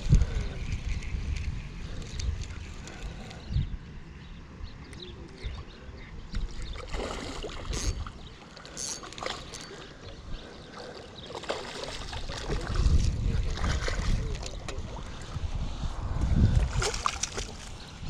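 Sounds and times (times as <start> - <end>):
wind buffeting microphone: 0.0 - 8.4, 11.5 - 18.0
spillway water rushing: 16.6 - 18.0.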